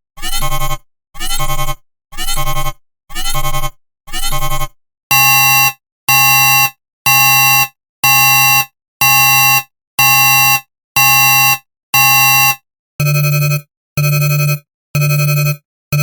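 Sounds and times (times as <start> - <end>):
buzzy alarm beeps: 5.1 - 8.5, 11.2 - 16.0.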